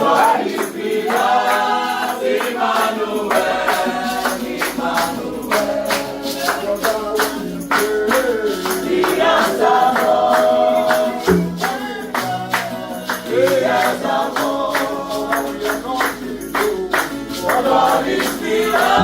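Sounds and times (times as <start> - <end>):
choir singing: 0.0 - 19.0
bright percussion hits: 11.3 - 11.8.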